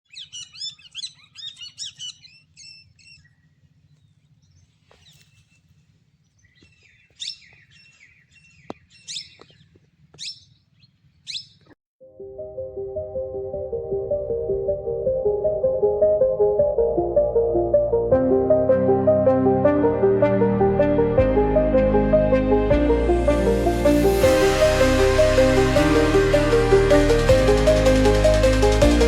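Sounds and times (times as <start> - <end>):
small birds chirping: 0.1 - 11.8
soft music: 12.0 - 29.0.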